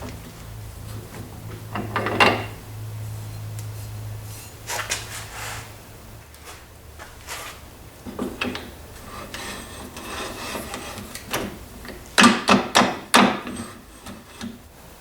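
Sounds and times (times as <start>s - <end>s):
metal scraping: 9.0s - 11.1s.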